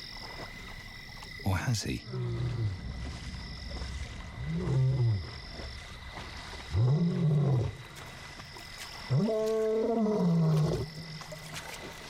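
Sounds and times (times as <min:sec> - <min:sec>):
frogs chorus: 0:00.0 - 0:06.8, 0:07.7 - 0:12.0
lion roaring: 0:04.4 - 0:05.4, 0:06.7 - 0:07.8, 0:09.1 - 0:10.9.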